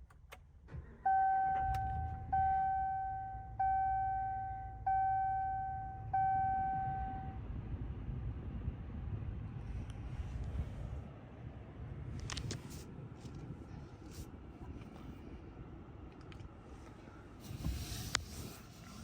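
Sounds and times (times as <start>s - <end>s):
engine idling hum: 0.0s - 19.0s
dashboard warning chime: 1.1s - 7.4s.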